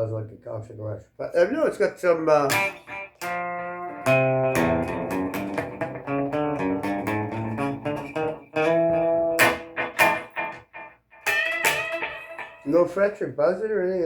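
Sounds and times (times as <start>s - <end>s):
electric guitar strums: 2.4s - 13.1s
electric guitar picked notes: 2.5s - 13.0s.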